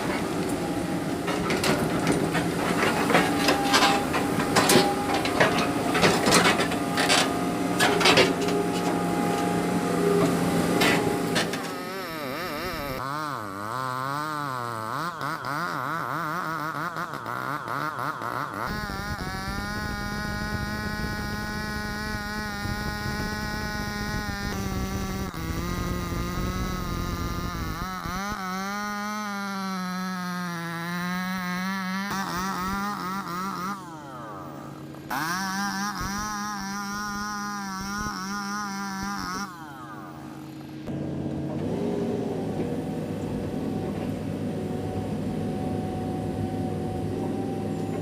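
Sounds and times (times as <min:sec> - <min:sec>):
knocks and clanks: 0:00.0 - 0:09.5, 0:10.2 - 0:11.8
excavator engine running: 0:00.0 - 0:48.0
buzzing tone: 0:02.8 - 0:17.6, 0:18.6 - 0:28.4.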